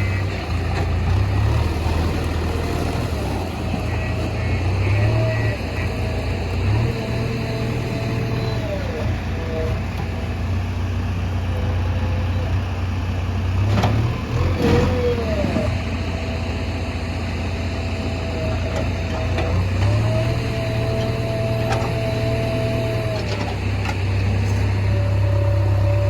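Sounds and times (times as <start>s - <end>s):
diesel engine running: 0.0s - 26.0s.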